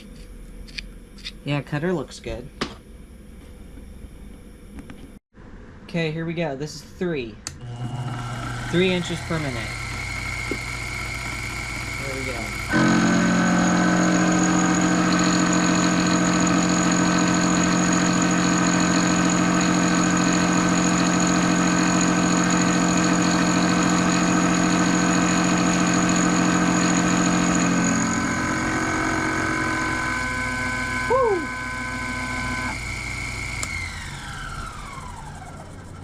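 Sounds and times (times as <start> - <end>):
milling machine cutting steel: 7.6 - 35.8.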